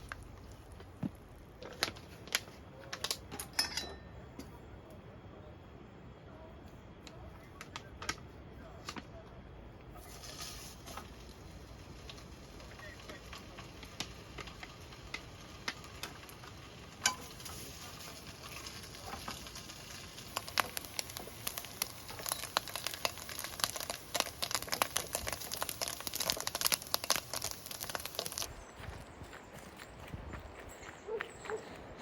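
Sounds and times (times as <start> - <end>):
food frying in a pan: 10.0 - 28.5.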